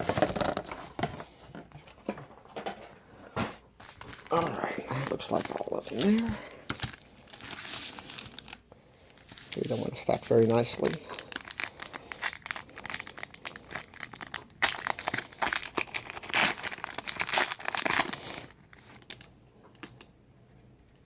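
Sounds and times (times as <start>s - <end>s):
foil packs crinkling and tearing: 3.8s - 20.1s.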